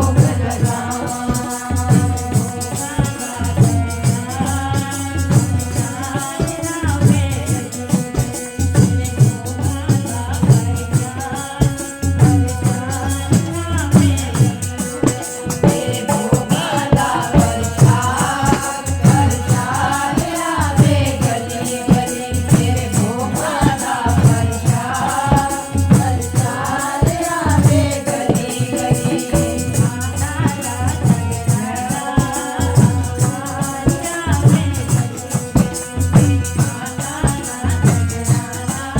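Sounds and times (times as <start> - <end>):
devotional song singing: 0.0 - 38.9
shaken rattle percussion: 0.0 - 38.9.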